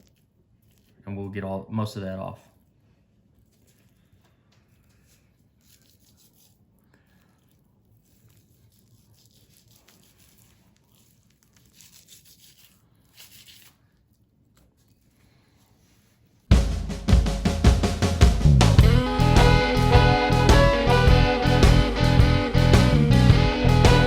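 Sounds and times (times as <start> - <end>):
knife scraping raw meat: 3.4 - 6.8, 7.4 - 16.4.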